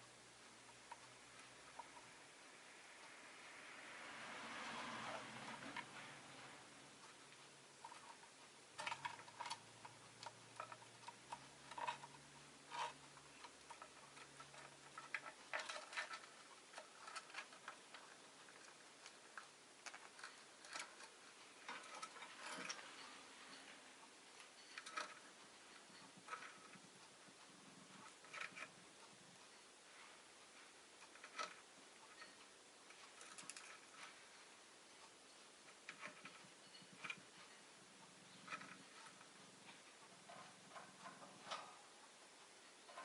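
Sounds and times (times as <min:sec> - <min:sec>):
faint low hum: 0:00.0 - 0:43.0
bird clicking and pecking in cage: 0:07.1 - 0:28.8, 0:30.0 - 0:34.5, 0:35.1 - 0:37.5, 0:38.3 - 0:42.2.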